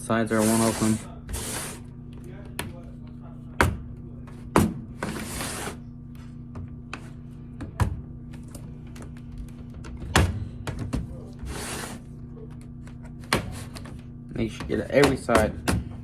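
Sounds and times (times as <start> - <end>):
scraping rustle: 0.3 - 1.8.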